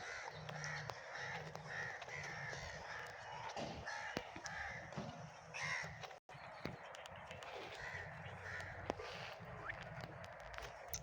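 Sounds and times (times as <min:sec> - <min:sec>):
crows cawing: 0:00.0 - 0:06.0, 0:07.7 - 0:09.4.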